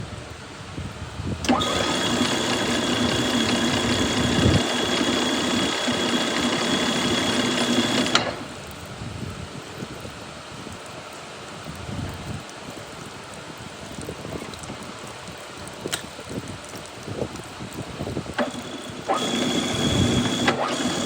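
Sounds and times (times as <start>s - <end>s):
lathe whining with high ringing tone: 1.4s - 8.6s, 18.4s - 21.0s.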